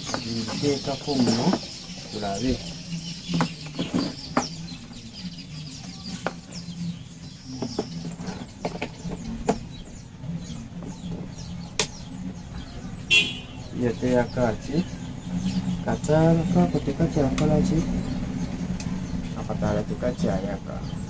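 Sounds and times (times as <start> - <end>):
chickens clucking: 0.0 - 21.0
sharp clicks and knocks: 11.8 - 12.0.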